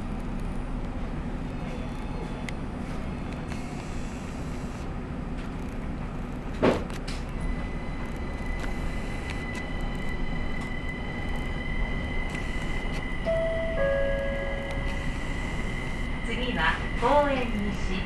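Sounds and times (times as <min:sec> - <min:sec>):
train cabin rumble: 0:04.8 - 0:18.0
high-pitched whine: 0:07.4 - 0:18.0
two-tone electronic chime: 0:13.2 - 0:15.3.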